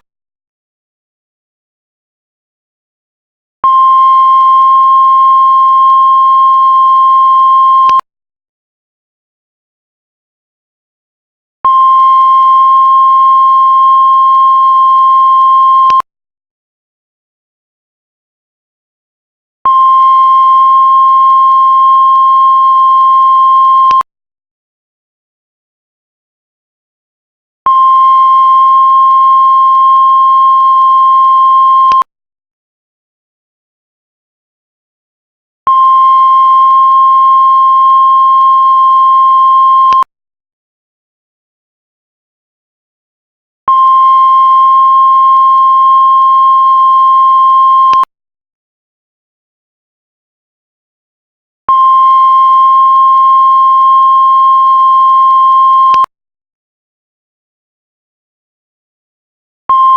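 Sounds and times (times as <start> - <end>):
heart monitor flatline beep: 3.6 - 8.1, 11.7 - 16.1, 19.7 - 24.1, 27.7 - 32.1, 35.7 - 40.1, 43.7 - 48.1, 51.7 - 56.1.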